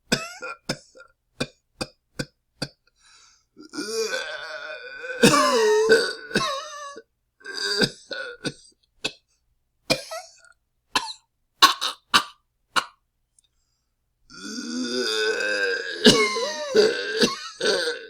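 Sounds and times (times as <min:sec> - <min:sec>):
man coughing: 0:05.2 - 0:07.0, 0:16.0 - 0:17.9.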